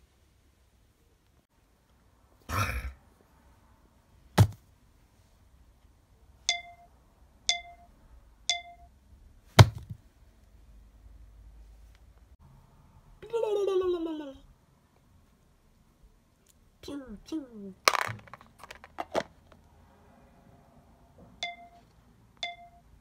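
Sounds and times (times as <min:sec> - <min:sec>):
taps with short chime: 0:06.5 - 0:06.9, 0:07.5 - 0:07.9, 0:08.5 - 0:08.9, 0:21.4 - 0:22.9.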